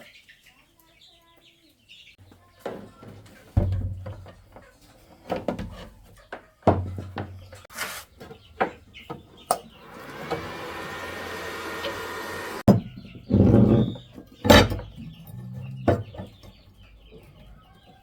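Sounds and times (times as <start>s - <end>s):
steady mechanical whine: 9.6s - 12.7s.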